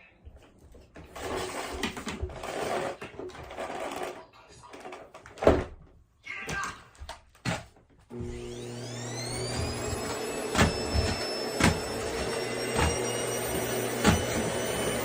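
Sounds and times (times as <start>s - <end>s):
vacuum cleaner motor running: 8.1s - 15.0s
knocks and clunks: 9.3s - 14.6s.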